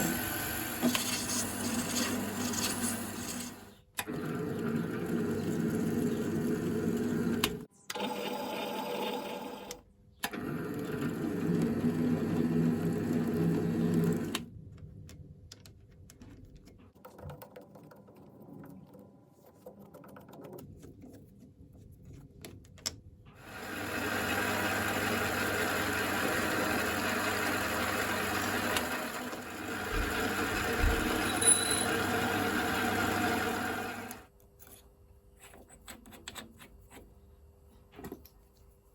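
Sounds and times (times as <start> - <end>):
bench-top lathe running: 23.5 - 34.2.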